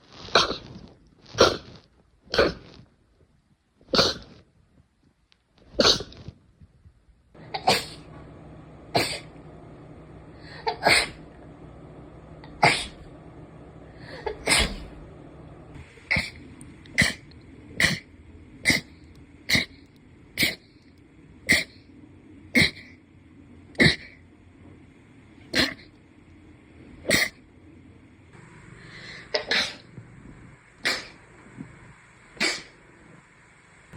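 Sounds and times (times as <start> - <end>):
person sneezing: 7.4 - 8.1, 8.9 - 9.3, 10.4 - 11.2, 12.5 - 13.1, 14.0 - 15.0, 16.1 - 17.2, 29.0 - 29.9, 30.8 - 31.2, 32.4 - 32.8.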